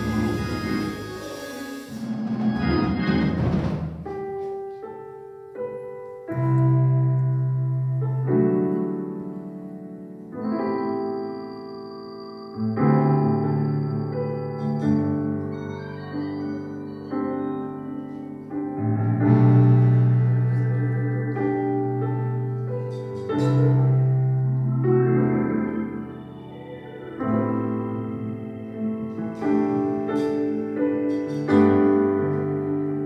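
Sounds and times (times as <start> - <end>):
piano playing slow chords: 0.0 - 33.0.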